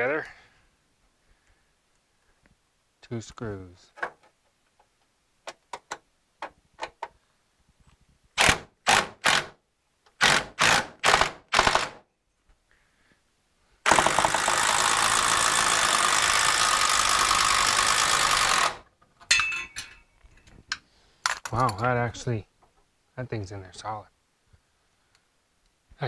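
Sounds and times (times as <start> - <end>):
power drill driving screws: 8.4 - 9.6, 10.2 - 12.0, 13.8 - 18.9.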